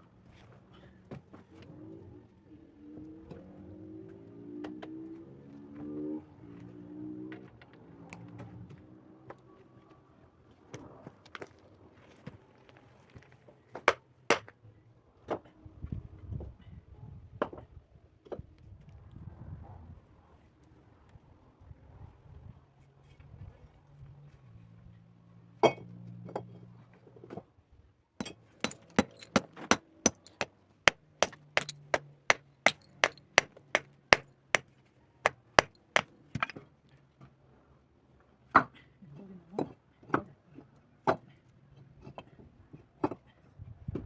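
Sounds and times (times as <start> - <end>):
hard clinking strikes: 28.2 - 30.5, 32.7 - 34.3.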